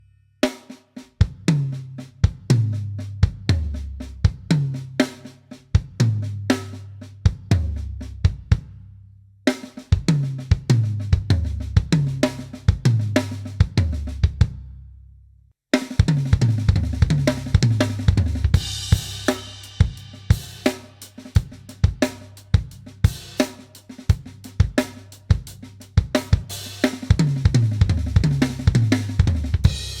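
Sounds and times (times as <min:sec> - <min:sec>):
drum kit playing a fill: 0:16.0 - 0:30.0.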